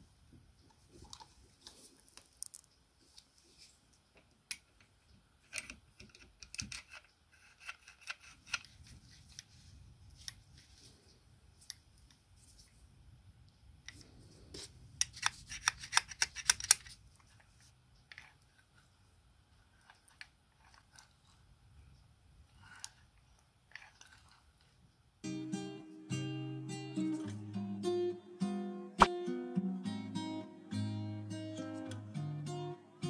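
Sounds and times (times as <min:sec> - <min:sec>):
sharp clicks and snips: 0:15.0 - 0:17.0.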